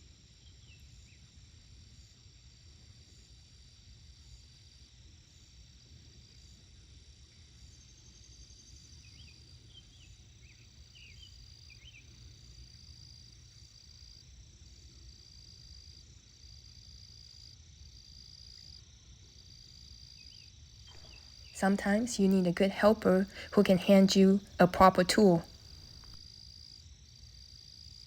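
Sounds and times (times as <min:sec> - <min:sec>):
faint insects trilling: 0:00.0 - 0:28.0.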